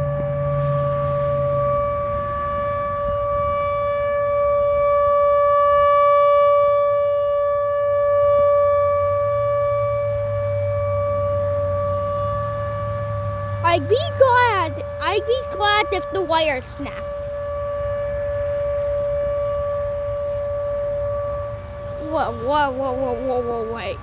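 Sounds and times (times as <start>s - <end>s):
warning siren high-pitched tone: 0.0s - 24.0s.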